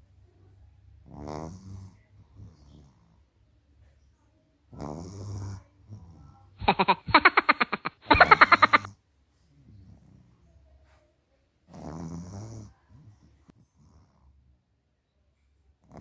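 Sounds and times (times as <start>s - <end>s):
dog snoring: 1.0s - 3.2s, 4.7s - 6.4s, 11.7s - 14.3s
rapid pulses: 6.6s - 8.9s.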